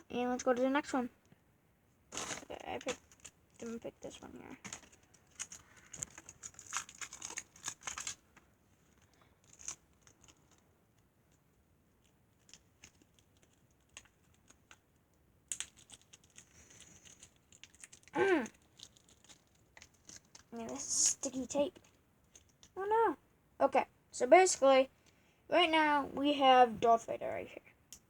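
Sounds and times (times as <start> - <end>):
small clicks and rustles: 0.0 - 22.8
plastic bag crinkling and tearing: 2.1 - 10.6, 15.5 - 22.7.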